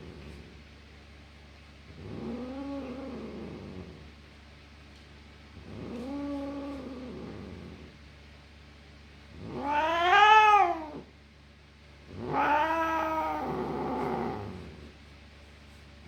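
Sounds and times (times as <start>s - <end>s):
cat yowling: 9.5s - 11.1s, 12.2s - 14.5s.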